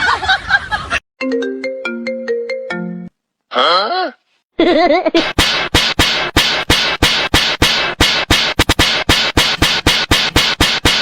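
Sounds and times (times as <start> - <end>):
chime-like ringtone jingle: 1.2 - 3.1
music with sharp beat: 5.2 - 11.0.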